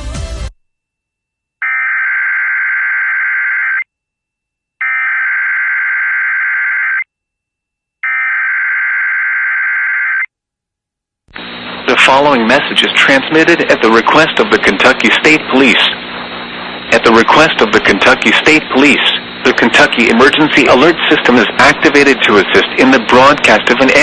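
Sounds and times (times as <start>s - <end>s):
screeching digital data tones: 1.6s - 3.8s.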